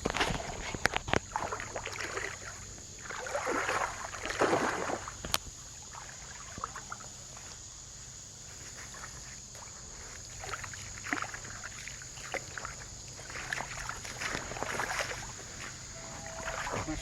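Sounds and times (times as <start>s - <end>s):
creek water splashing: 0.0s - 17.0s.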